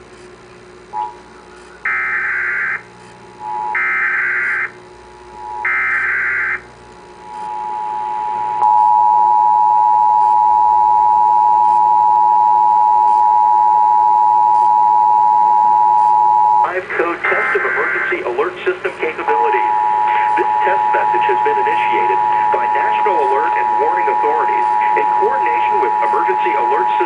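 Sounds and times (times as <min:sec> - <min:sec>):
two-tone alarm: 0:00.9 - 0:01.2, 0:01.8 - 0:16.7, 0:19.0 - 0:27.0
data tone bursts: 0:07.3 - 0:27.0.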